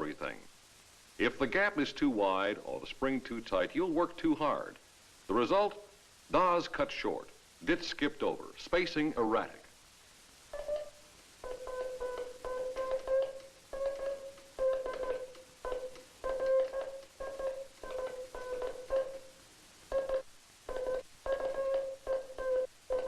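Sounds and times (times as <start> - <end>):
morse code tone: 10.6 - 19.3, 19.9 - 23.0.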